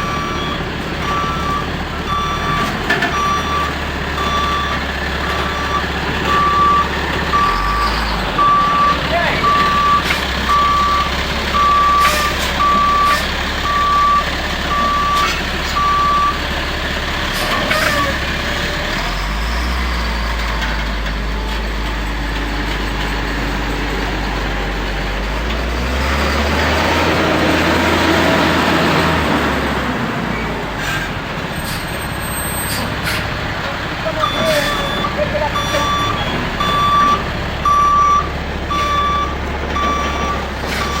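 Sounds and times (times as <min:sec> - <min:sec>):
backup alarm beeping: 0:00.0 - 0:16.4, 0:34.1 - 0:41.0
diesel engine revving: 0:00.0 - 0:41.0.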